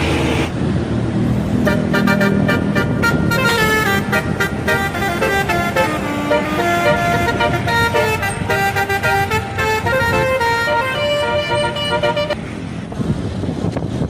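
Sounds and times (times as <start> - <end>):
bus horn playing a melody: 1.6 - 12.4.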